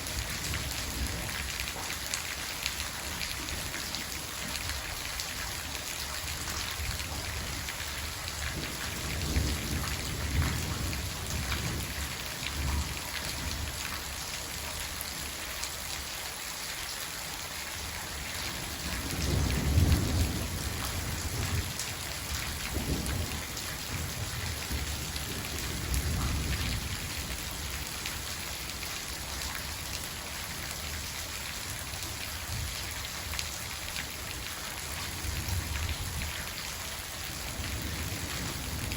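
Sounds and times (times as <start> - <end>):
steady rain falling: 0.0 - 38.9
low rolls of thunder: 8.4 - 13.8, 18.7 - 27.9, 37.5 - 38.9.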